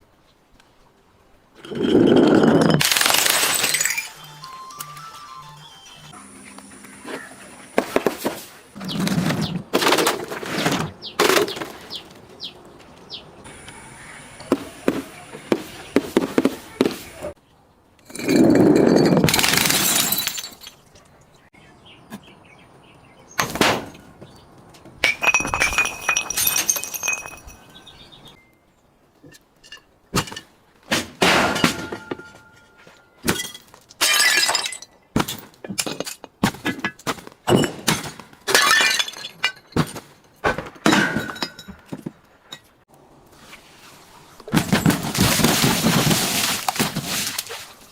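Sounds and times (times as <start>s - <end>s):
glass bottles smashing and crunching: 1.8s - 4.5s, 18.1s - 20.9s, 25.0s - 27.9s, 31.3s - 42.7s, 44.6s - 47.9s.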